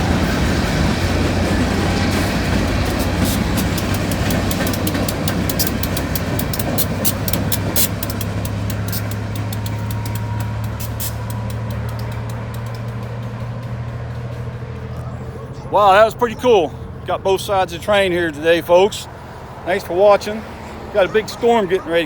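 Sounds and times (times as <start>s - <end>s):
train wheels clicking on rails: 0.0s - 15.2s
diesel engine drone: 0.0s - 22.0s.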